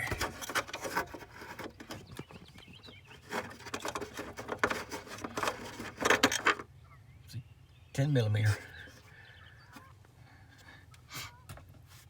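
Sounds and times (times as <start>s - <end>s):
tool and metal bolt rattling: 0.0s - 6.6s.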